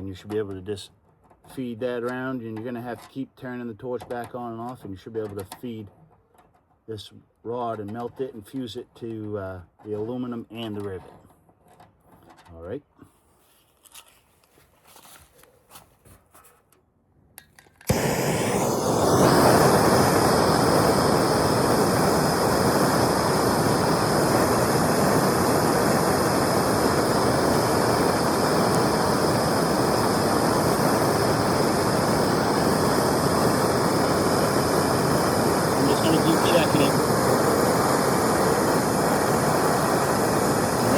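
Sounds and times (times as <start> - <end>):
gas torch burning with rushing hiss: 17.8 - 40.9.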